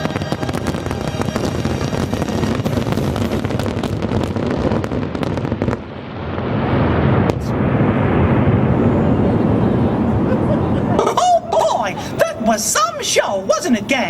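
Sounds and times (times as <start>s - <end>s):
steady rushing noise: 0.0s - 13.9s
fireworks bangs and crackling: 0.0s - 14.0s.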